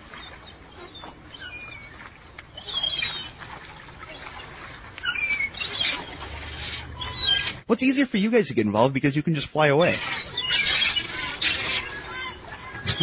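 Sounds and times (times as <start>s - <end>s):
gulls calling: 0.0s - 13.0s.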